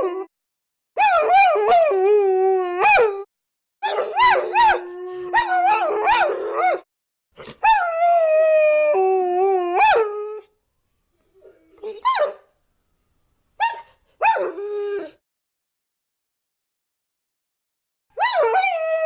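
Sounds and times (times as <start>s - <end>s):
dogs howling: 1.0s - 6.8s.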